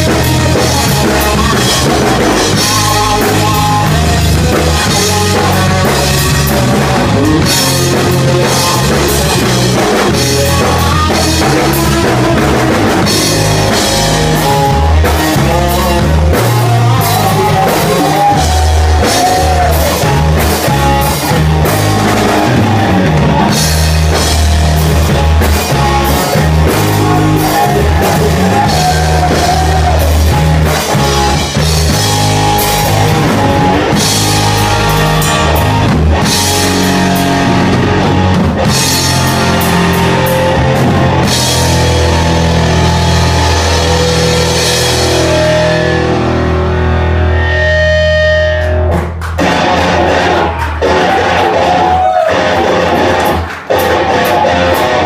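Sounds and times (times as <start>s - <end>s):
person singing: 0.0s - 23.6s, 25.6s - 35.6s
rock band playing live: 0.0s - 55.0s.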